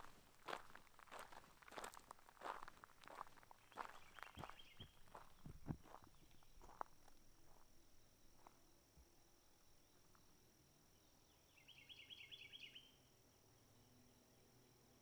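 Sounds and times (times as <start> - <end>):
soft footsteps: 0.0 - 7.8.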